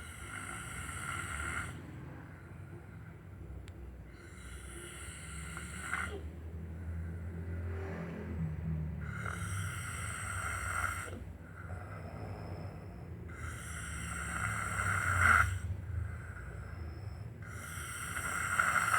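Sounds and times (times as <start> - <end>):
man snoring: 0.0 - 1.9, 4.1 - 6.3, 9.0 - 16.8, 17.4 - 18.9.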